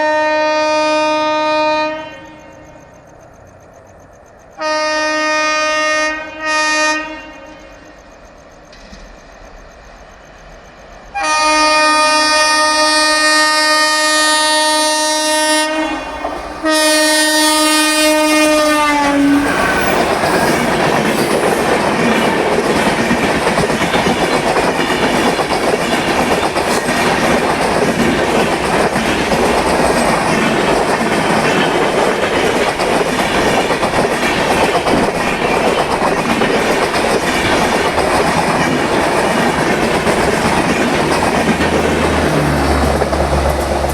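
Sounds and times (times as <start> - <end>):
locomotive horn: 0.0 - 2.8, 4.6 - 7.9, 11.1 - 20.7
train coaches rumbling on track: 0.0 - 43.9.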